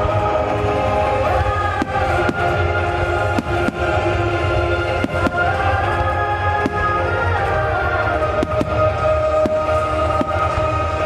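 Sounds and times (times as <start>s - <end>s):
fireworks bursting: 0.0s - 11.0s
music over loudspeakers: 0.0s - 11.0s
sharp bangs: 1.8s - 7.6s.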